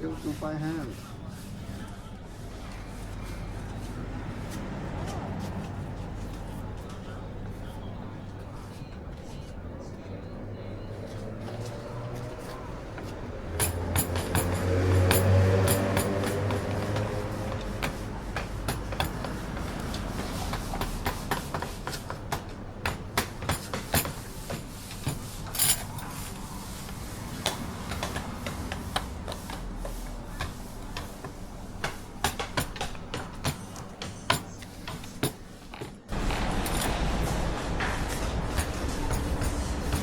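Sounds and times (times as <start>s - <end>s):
engine: 11.5s - 20.6s, 36.1s - 40.0s
hand tools tapping wood: 11.5s - 40.0s.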